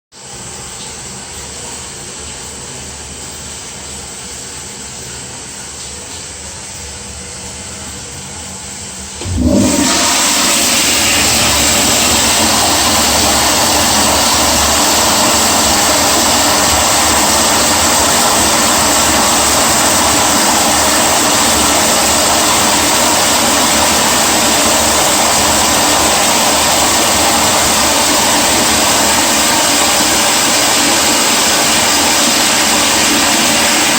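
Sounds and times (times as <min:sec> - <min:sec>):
toilet flush rush of water: 0:00.2 - 0:33.9
water hissing: 0:09.2 - 0:33.9.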